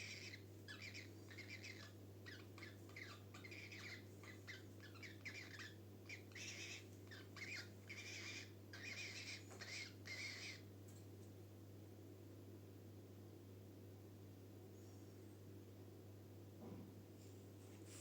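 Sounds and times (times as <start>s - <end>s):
cockatiels chirping and calling: 0.0s - 10.6s.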